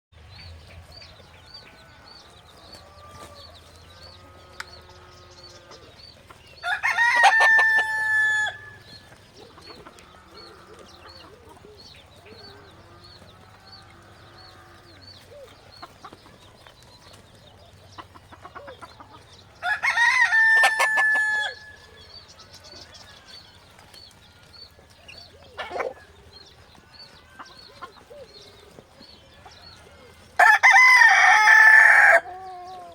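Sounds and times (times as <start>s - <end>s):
chickens clucking softly: 2.5s - 30.3s, 31.8s - 32.9s
rooster crowing: 6.6s - 9.0s, 19.6s - 21.9s, 30.4s - 32.9s.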